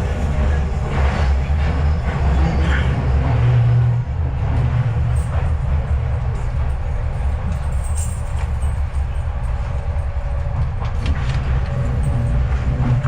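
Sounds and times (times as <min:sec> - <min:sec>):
train interior rumble: 0:00.0 - 0:13.0
train clicks: 0:04.4 - 0:13.0.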